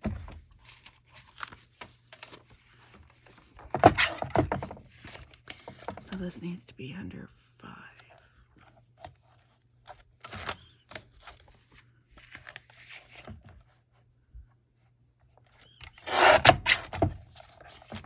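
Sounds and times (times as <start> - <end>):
paper rustling and scraping: 0.0 - 6.1, 8.6 - 13.7, 15.6 - 18.0.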